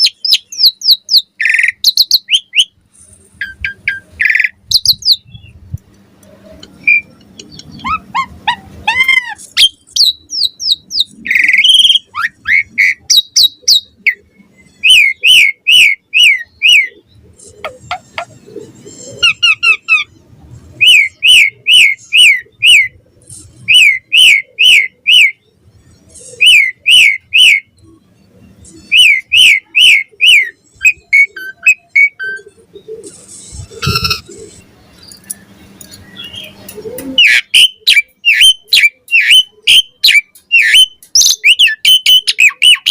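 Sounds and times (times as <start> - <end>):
bird chattering: 0.0 - 2.7, 6.6 - 20.1, 28.7 - 42.9
starling singing whistles: 26.3 - 27.7, 37.2 - 42.9.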